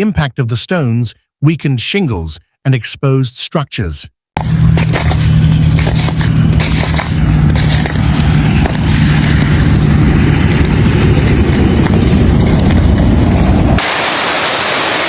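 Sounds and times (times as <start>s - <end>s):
hailstones pounding hard surfaces: 13.3s - 15.0s.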